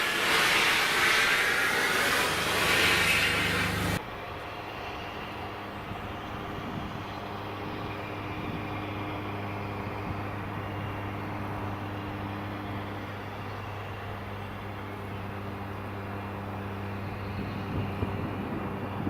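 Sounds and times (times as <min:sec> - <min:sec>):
steam hissing: 0:00.0 - 0:04.0
diesel locomotive engine idling: 0:00.0 - 0:18.7.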